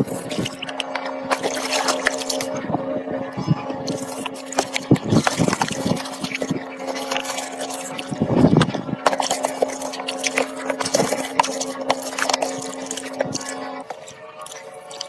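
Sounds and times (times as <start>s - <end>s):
steady mechanical hum: 0.0s - 15.0s
wet liquid sounds: 0.0s - 15.0s.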